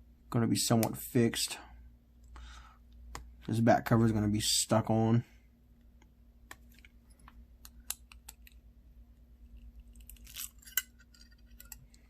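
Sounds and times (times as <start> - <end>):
faint steady hum: 0.0 - 12.0
plastic parts clicking and scraping: 9.5 - 12.0.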